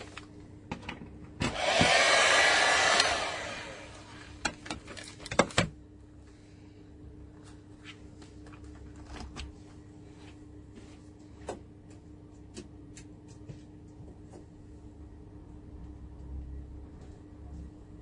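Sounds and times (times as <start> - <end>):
faint steady hum: 2.0 - 18.0.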